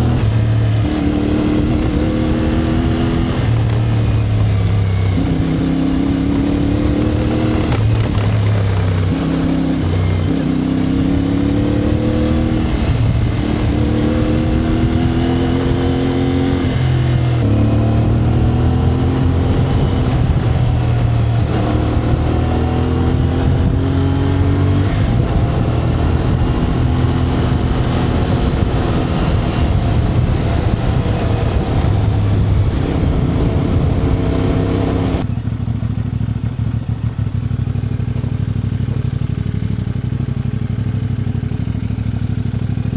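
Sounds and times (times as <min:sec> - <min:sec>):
vehicle engine revving under load: 0:00.0 - 0:35.3.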